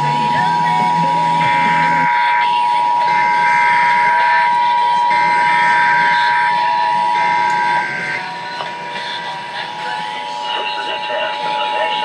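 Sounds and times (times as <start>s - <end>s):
two-tone alert signal: 0.0s - 9.5s.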